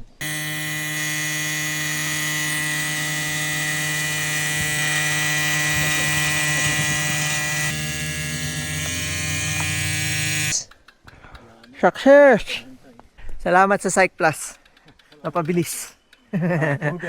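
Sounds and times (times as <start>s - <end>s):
electric buzz: 0.0s - 10.6s.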